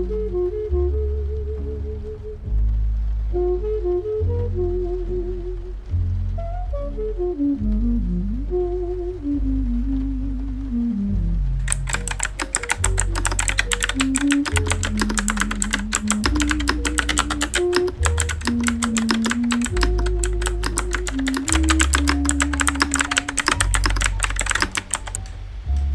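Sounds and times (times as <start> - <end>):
background music with bass: 0.0 - 11.8
mechanical keyboard typing: 11.6 - 25.3.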